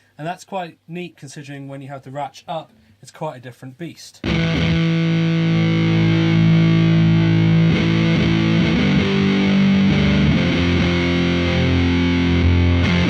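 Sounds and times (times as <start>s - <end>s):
fuzzed electric guitar notes: 4.2s - 13.0s.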